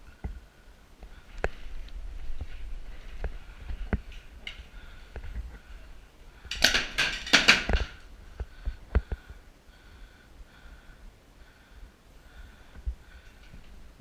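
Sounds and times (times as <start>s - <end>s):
sharp knocks: 6.5s - 8.0s.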